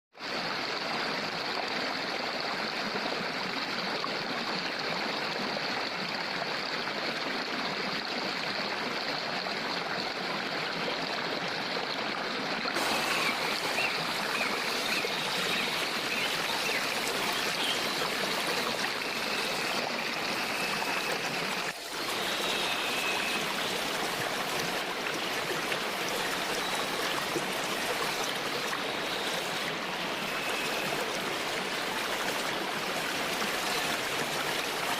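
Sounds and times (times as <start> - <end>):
waterfall and stream rushing: 10.7 - 34.9.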